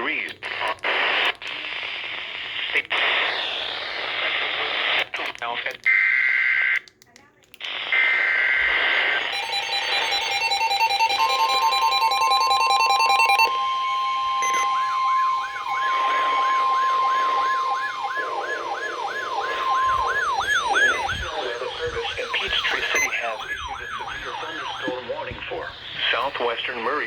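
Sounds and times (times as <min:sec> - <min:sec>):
electronic siren wailing: 0:09.2 - 0:26.6
steady single alert tone: 0:09.3 - 0:21.1
two-tone alarm beep: 0:09.3 - 0:26.3.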